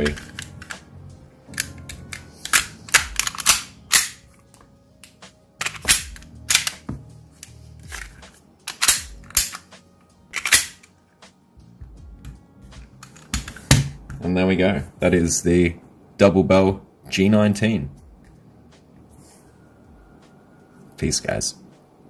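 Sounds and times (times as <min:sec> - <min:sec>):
toy pistol parts clacking: 0:00.0 - 0:00.8, 0:01.5 - 0:04.2, 0:05.0 - 0:06.8, 0:07.4 - 0:09.7, 0:10.4 - 0:10.9.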